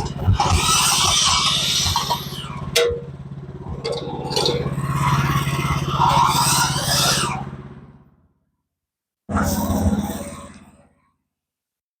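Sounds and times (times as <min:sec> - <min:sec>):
saw rasping through log: 0:00.0 - 0:02.8, 0:03.8 - 0:07.5
engine droning: 0:00.0 - 0:08.5, 0:09.3 - 0:11.0.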